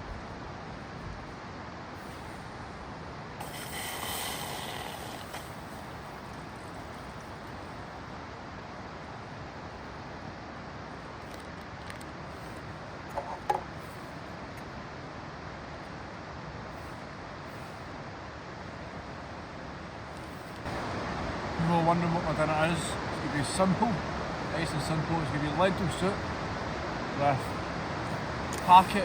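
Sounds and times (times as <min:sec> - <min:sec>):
waterfall rushing: 0:00.7 - 0:10.8, 0:18.5 - 0:29.0.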